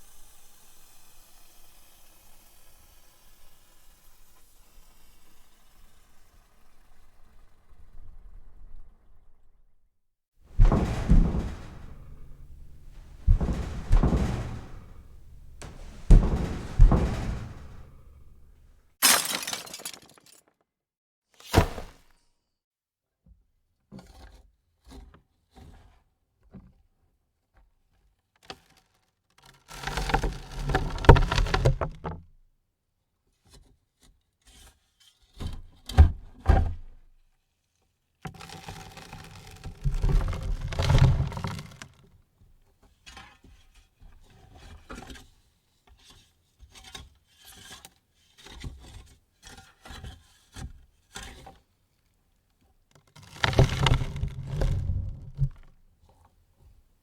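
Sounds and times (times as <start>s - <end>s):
short thuds: 10.5s - 19.4s
dirt landing on wooden coffin lid: 10.6s - 19.8s.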